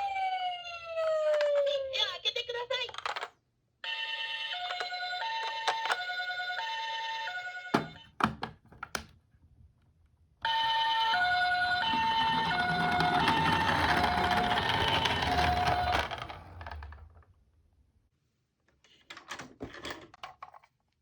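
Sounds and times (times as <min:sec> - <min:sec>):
toy two-tone siren: 0:00.0 - 0:01.9, 0:03.8 - 0:07.8, 0:10.5 - 0:16.8.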